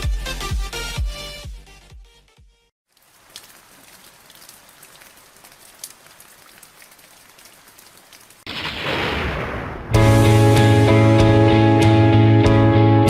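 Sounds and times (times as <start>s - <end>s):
rain falling: 2.9s - 9.9s.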